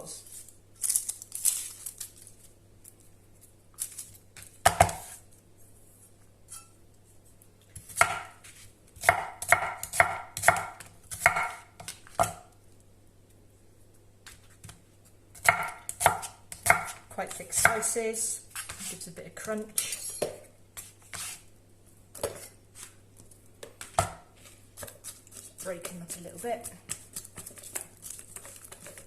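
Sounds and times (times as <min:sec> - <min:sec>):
knife chopping on cutting board: 0:04.6 - 0:05.2, 0:07.8 - 0:12.4, 0:15.4 - 0:17.8, 0:23.7 - 0:25.5.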